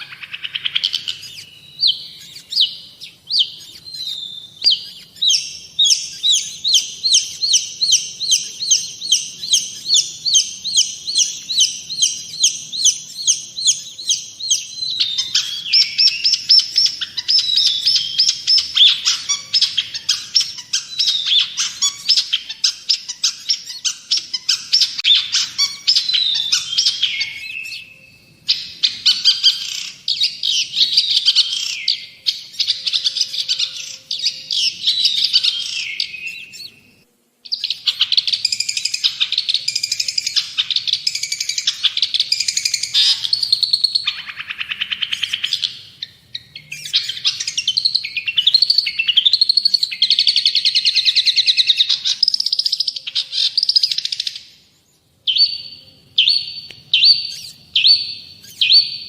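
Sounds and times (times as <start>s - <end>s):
shrike singing: 0.0s - 59.0s.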